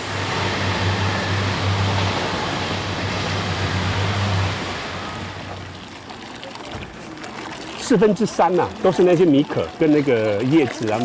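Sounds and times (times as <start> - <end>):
machine motor hum with rushing: 0.0 - 5.8.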